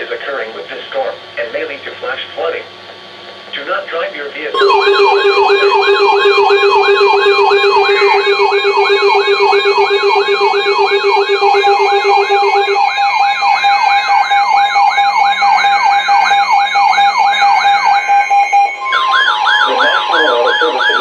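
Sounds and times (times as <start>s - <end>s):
steady electronic tones: 4.5s - 21.0s
electronic siren alarm yelping: 4.6s - 21.0s.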